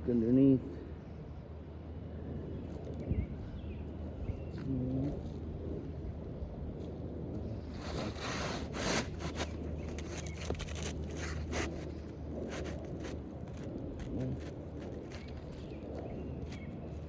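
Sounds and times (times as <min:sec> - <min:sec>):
wind rumble on microphone: 0:00.0 - 0:17.0
shingles rubbing and scraping: 0:07.6 - 0:17.0.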